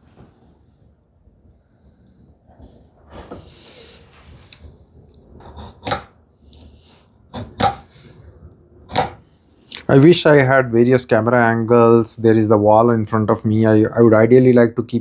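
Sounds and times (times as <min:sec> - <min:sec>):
tool scraping wood: 0:05.4 - 0:06.1, 0:07.4 - 0:08.0, 0:08.9 - 0:09.3
wood and tools knocking: 0:05.4 - 0:06.1, 0:07.4 - 0:07.9, 0:08.9 - 0:09.2.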